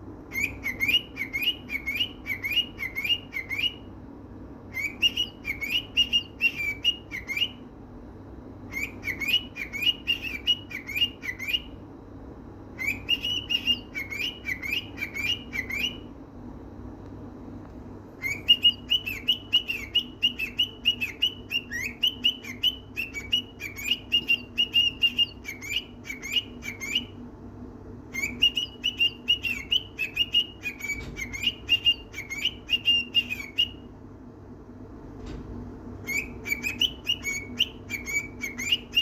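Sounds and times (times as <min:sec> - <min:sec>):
cockatiel chirping and whistling: 0:00.3 - 0:03.9, 0:04.7 - 0:07.6, 0:08.7 - 0:11.8, 0:12.8 - 0:16.1, 0:18.2 - 0:27.2, 0:28.1 - 0:33.9, 0:36.0 - 0:39.0.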